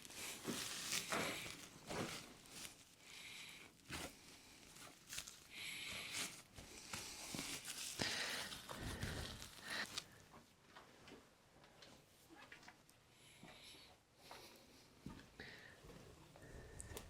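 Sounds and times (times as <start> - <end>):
handling rustles and scrapes: 0.0 - 11.2.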